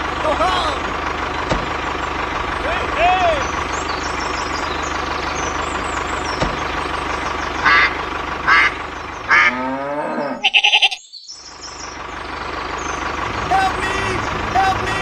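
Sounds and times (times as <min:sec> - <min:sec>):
short high-pitched calls: 0:10.4 - 0:11.1.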